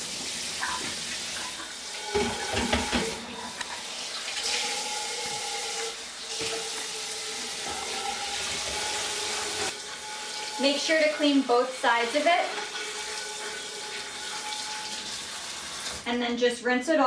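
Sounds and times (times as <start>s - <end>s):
kitchen tap running: 0.0s - 16.1s
plate knocking against sink: 2.1s - 3.2s.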